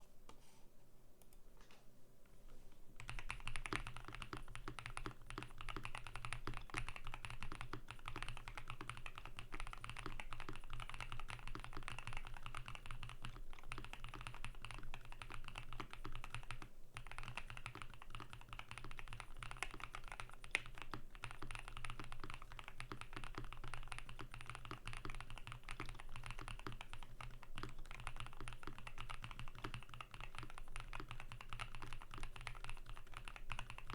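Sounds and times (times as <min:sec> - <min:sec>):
mechanical keyboard typing: 0:03.0 - 0:33.9.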